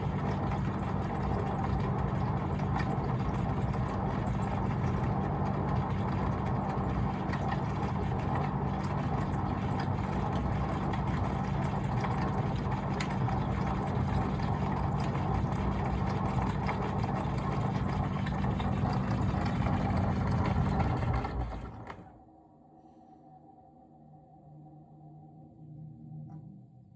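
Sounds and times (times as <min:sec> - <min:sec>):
tumble dryer humming and rumbling: 0:00.0 - 0:22.2.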